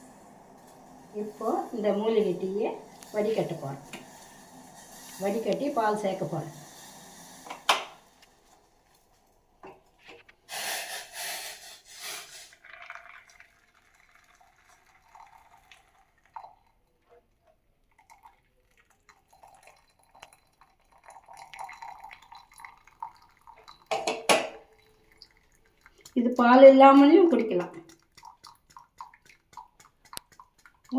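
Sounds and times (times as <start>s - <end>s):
liquid pouring: 0.0s - 10.3s, 11.9s - 30.9s
dripping: 0.0s - 10.5s, 11.8s - 17.2s, 17.8s - 30.9s
metal pots clinking: 23.6s - 28.3s.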